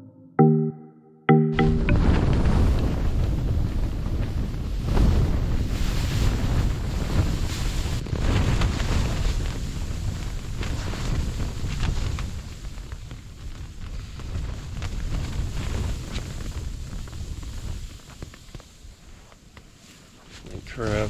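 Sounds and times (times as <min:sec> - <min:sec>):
strong gusting wind: 0:02.0 - 0:18.0.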